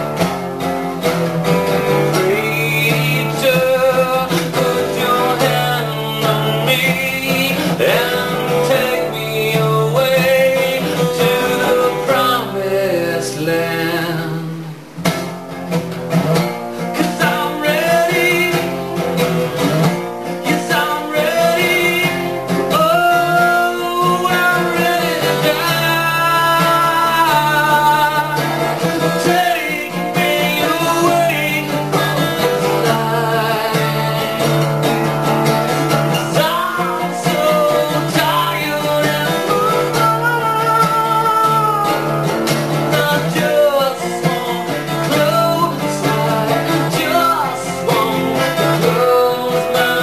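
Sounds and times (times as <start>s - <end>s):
acoustic guitar strumming: 0.0s - 50.0s
person singing: 1.4s - 15.0s, 16.8s - 50.0s.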